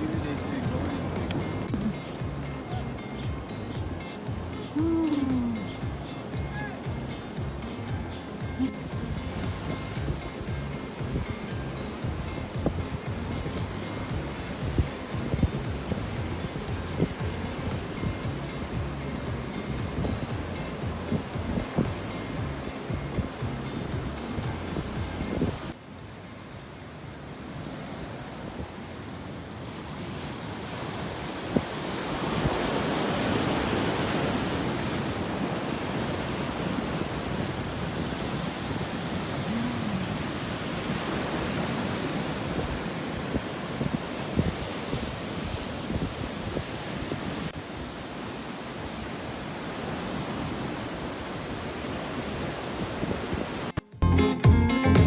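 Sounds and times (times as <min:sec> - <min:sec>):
music: 0:00.0 - 0:25.8, 0:53.8 - 0:55.0
wind buffeting microphone: 0:00.0 - 0:25.8, 0:29.9 - 0:53.7
ocean surf washing on shore: 0:00.0 - 0:53.8.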